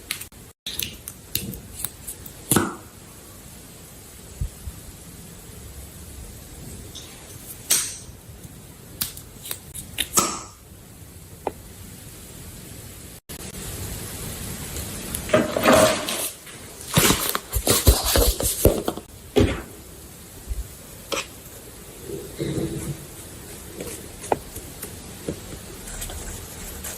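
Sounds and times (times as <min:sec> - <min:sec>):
clattering and rustling: 0:15.3 - 0:19.1.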